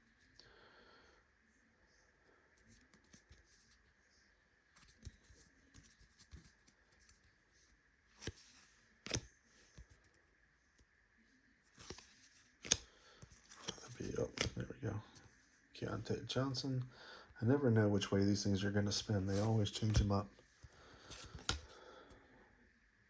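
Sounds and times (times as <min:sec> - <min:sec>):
cards rustling: 0:08.1 - 0:10.2, 0:11.7 - 0:15.3, 0:18.0 - 0:21.8
card snaps: 0:09.0 - 0:09.3, 0:12.6 - 0:12.9.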